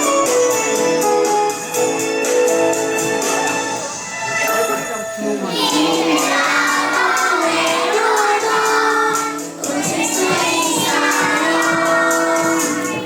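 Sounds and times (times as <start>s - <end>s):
musical accompaniment: 0.0s - 13.0s
children singing together: 5.4s - 13.0s.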